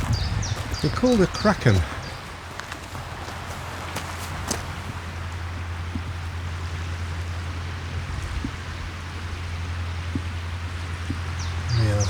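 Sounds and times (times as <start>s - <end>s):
wind hiss on microphone: 0.0s - 6.3s
constant low hum: 0.0s - 12.0s.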